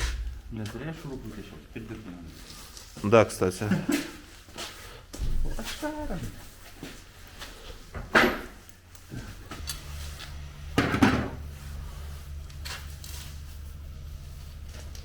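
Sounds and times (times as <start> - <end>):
sharp clattering hits: 0.0 - 0.8
steady low hum: 0.0 - 2.8, 8.7 - 15.0.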